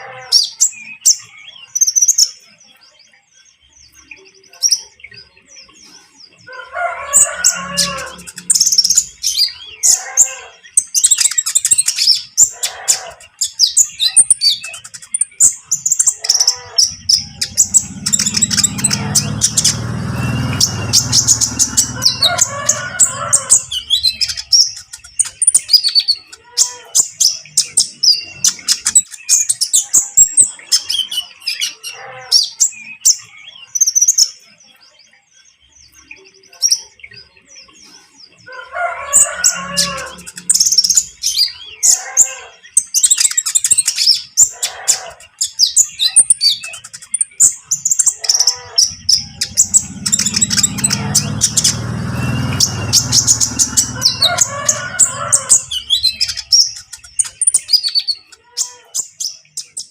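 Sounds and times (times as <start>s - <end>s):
bird singing high twittering trills: 0.0s - 59.9s.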